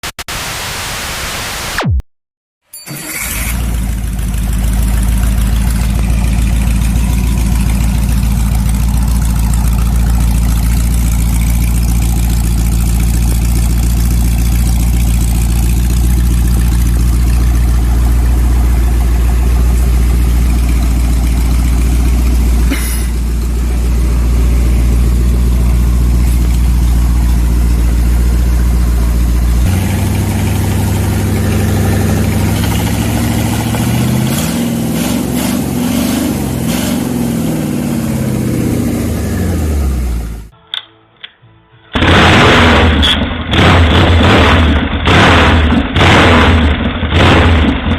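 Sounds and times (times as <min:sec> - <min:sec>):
old engine idling: 0:03.0 - 0:40.5
sharp click: 0:40.7 - 0:41.4.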